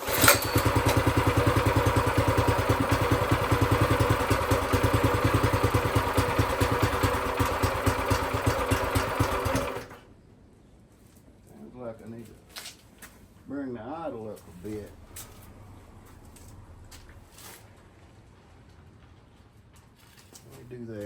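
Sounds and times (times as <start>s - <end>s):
small engine idling: 0.0s - 10.1s.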